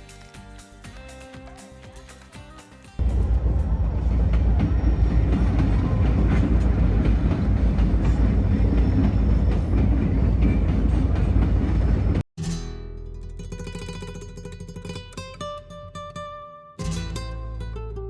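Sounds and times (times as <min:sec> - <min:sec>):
vehicle engine and road noise: 0:03.0 - 0:12.2.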